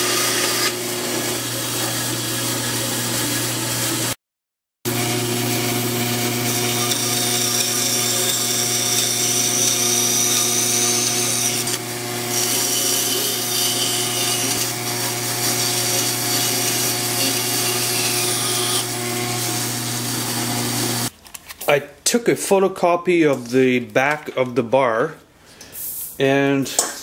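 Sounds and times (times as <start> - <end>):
power tool cutting wood: 0.0 - 4.2, 4.9 - 21.1.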